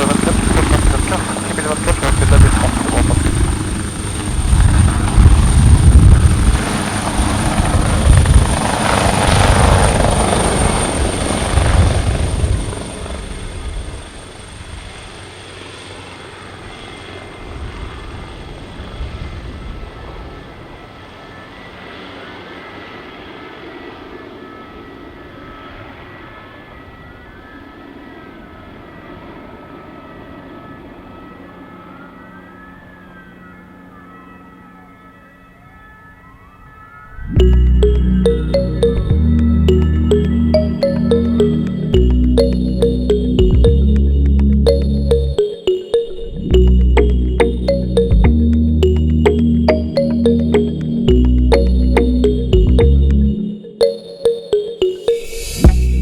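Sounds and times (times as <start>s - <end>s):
helicopter rotor beating: 0.0s - 14.0s
faint siren: 0.0s - 14.2s, 20.2s - 56.0s.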